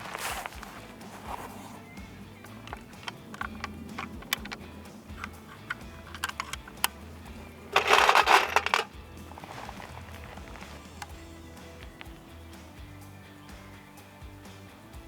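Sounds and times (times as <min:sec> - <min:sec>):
metallic clicks of rifle handling: 0:01.8 - 0:11.2.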